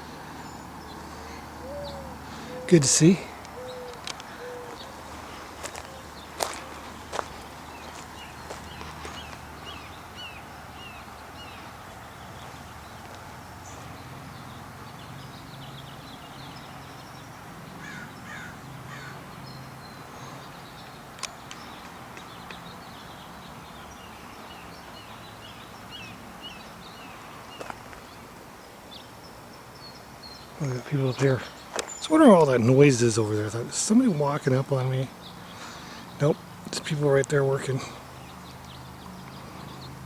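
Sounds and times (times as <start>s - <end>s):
distant work noise hum: 0.0s - 40.0s
small birds chirping: 0.0s - 40.0s
crows cawing: 1.0s - 9.8s, 17.8s - 19.4s.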